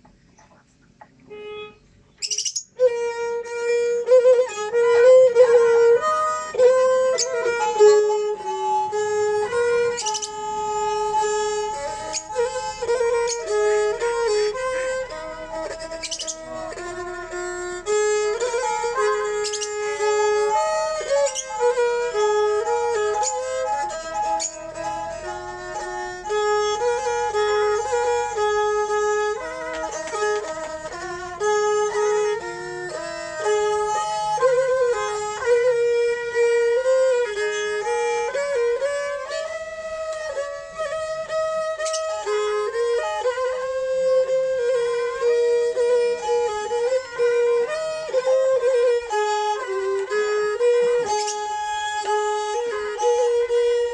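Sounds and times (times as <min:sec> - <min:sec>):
bowed fiddles playing melody: 0:01.1 - 0:53.9.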